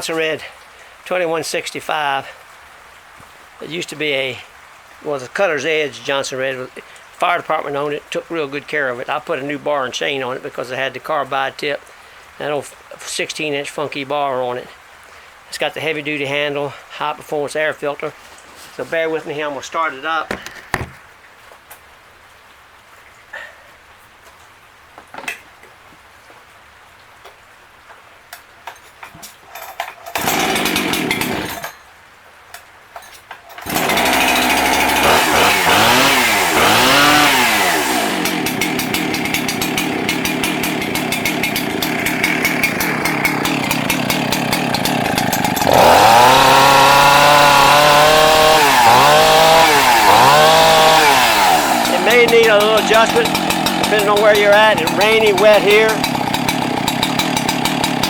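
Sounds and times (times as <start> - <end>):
chainsaw starting and revving: 0.0 - 0.5, 19.9 - 21.0, 30.1 - 31.8, 33.6 - 58.0.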